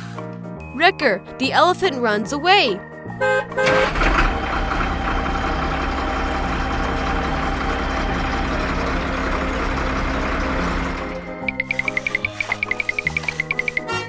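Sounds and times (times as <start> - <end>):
heavy vehicle engine idling: 3.6 - 13.8.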